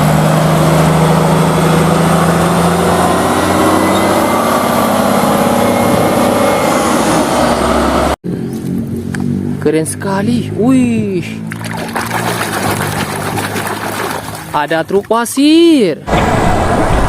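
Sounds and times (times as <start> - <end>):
heavy truck engine running: 0.0 - 9.4, 16.1 - 17.0.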